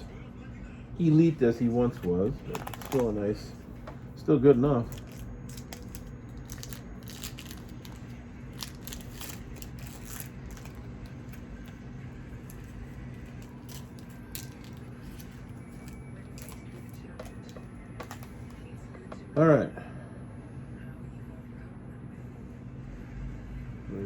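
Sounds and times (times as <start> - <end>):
low hum: 0.0 - 24.0
trading cards clicking and crackling: 1.8 - 18.7.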